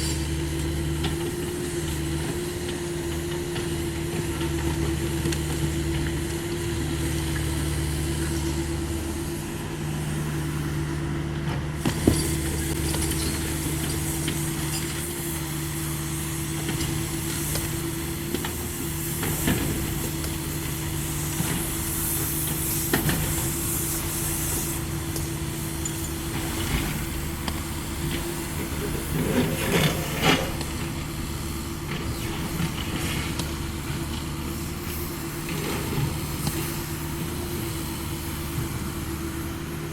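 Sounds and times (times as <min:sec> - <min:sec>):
mini excavator diesel engine: 0:00.0 - 0:39.9
hiss: 0:08.0 - 0:11.0, 0:11.8 - 0:39.9.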